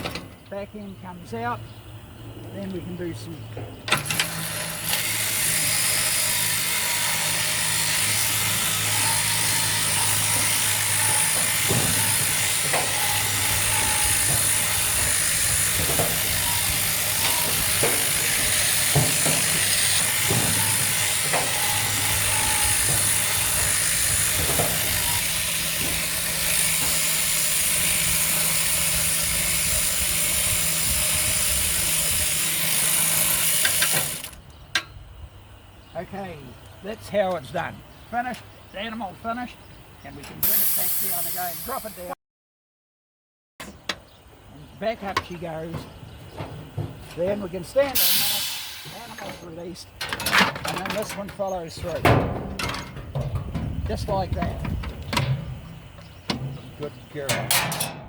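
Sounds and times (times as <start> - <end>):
electric shearing handpiece buzzing: 3.9 - 34.4, 40.4 - 42.2, 47.6 - 49.5.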